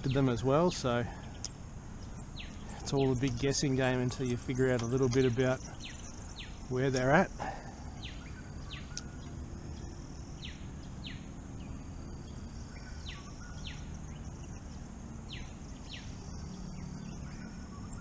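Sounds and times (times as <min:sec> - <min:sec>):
bird calling: 0:00.0 - 0:18.0.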